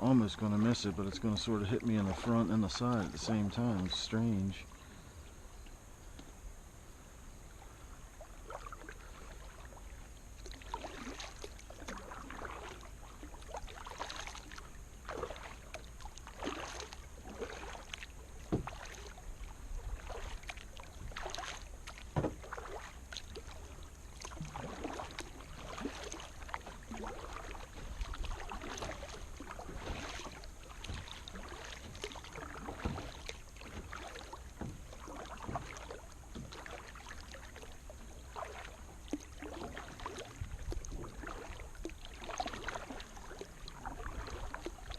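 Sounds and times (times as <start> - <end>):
waves splashing against kayak hull: 0.0 - 6.2, 7.3 - 44.9
steady low rumble: 0.0 - 10.6.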